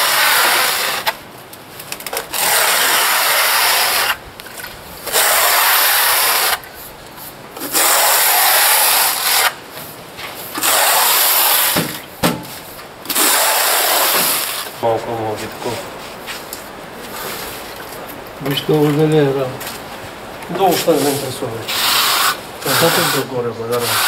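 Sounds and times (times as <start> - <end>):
trowel scraping adhesive: 0.0 - 1.2, 2.1 - 4.2, 5.0 - 6.7, 7.6 - 9.6, 10.5 - 11.9, 13.1 - 14.8, 20.8 - 24.0.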